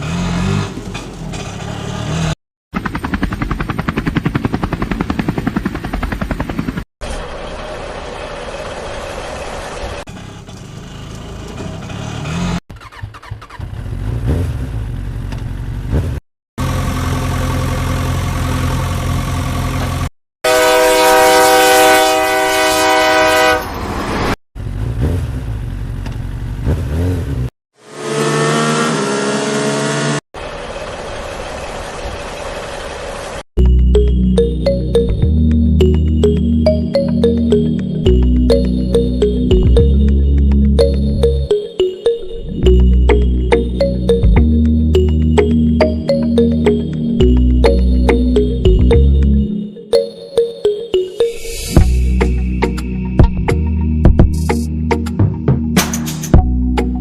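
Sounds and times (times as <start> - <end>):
vehicle engines running: 0.0 - 20.1, 28.2 - 41.5, 42.6 - 49.5
loud horn blast: 20.4 - 23.8.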